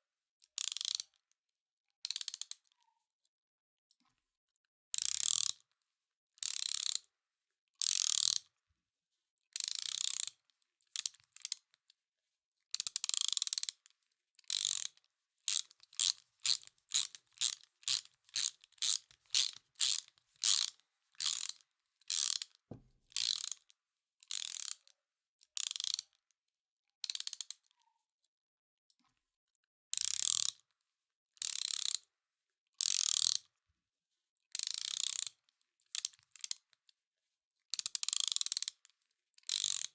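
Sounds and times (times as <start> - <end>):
ratchet wrench clicking: 0.7 - 1.0, 5.0 - 5.5, 7.9 - 8.4, 9.7 - 10.3, 13.0 - 13.7, 14.5 - 22.5, 23.2 - 23.6, 24.3 - 24.7, 30.0 - 30.5, 31.4 - 32.0, 32.8 - 33.4, 34.6 - 35.3, 37.9 - 38.7, 39.5 - 39.9.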